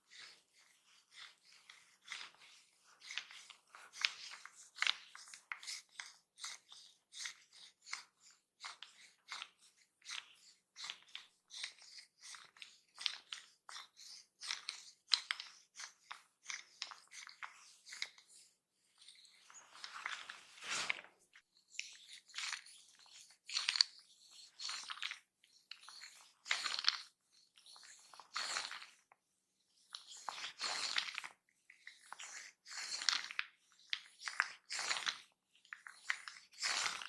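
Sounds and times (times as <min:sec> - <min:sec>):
hands rubbing and rustling: 0:00.1 - 0:29.2.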